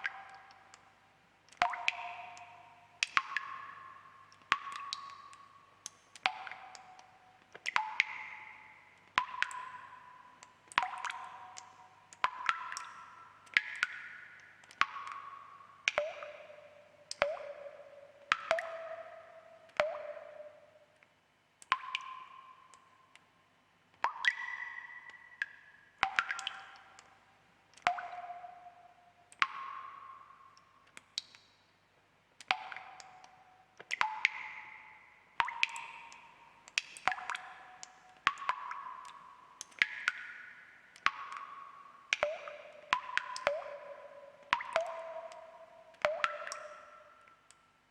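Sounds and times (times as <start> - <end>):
water drops plinking: 1.6 - 20.7, 24.0 - 27.1, 27.8 - 30.6, 32.4 - 47.6
faint little ticks: 23.9 - 31.6, 32.4 - 47.7.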